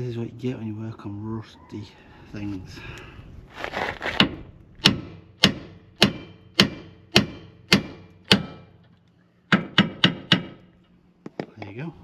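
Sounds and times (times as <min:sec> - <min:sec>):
hammer striking metal: 0:04.8 - 0:08.8, 0:09.5 - 0:10.7.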